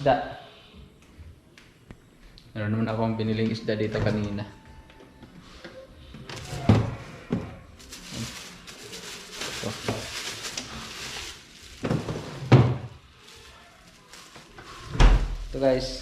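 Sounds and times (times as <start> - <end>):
rustling: 6.2 - 16.0
objects bumping: 6.4 - 13.0.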